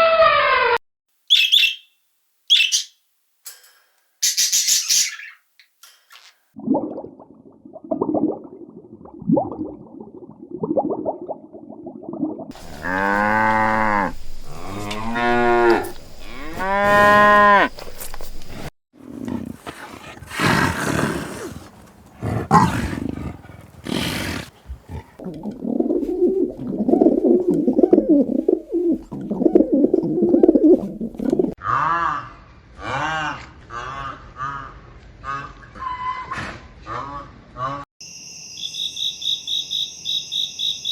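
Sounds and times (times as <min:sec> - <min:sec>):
cattle mooing: 0:12.5 - 0:17.8
farm animal noises: 0:12.5 - 0:18.6, 0:19.2 - 0:25.2.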